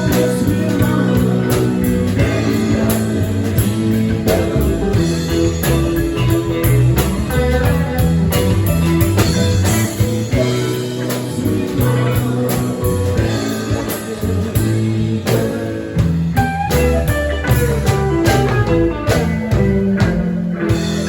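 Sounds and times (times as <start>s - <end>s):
bass and drums: 0.0s - 21.0s
electric guitar: 0.0s - 21.0s.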